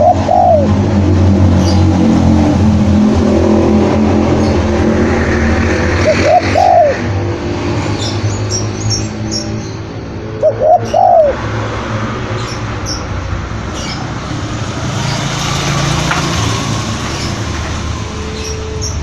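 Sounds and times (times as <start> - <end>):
dove cooing: 0.0 - 0.8, 6.0 - 7.1, 10.2 - 11.6
small birds chirping: 12.3 - 15.9.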